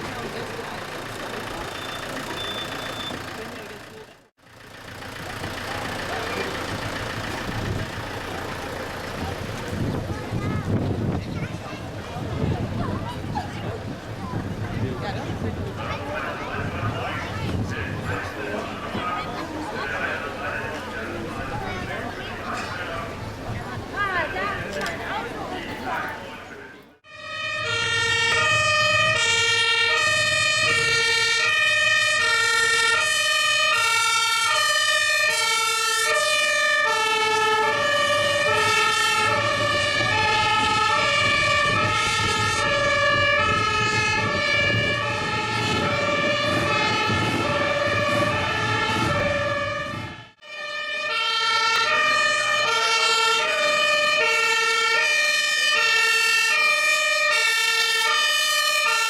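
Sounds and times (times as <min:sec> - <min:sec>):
vehicle engine running: 0:00.0 - 0:26.2
two-tone emergency siren: 0:27.0 - 0:59.0.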